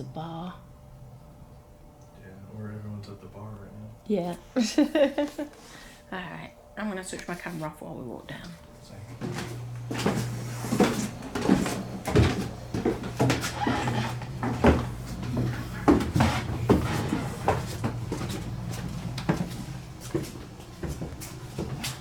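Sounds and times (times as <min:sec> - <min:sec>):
steady low hum: 0:00.0 - 0:22.0
footsteps on stairs: 0:09.0 - 0:22.0.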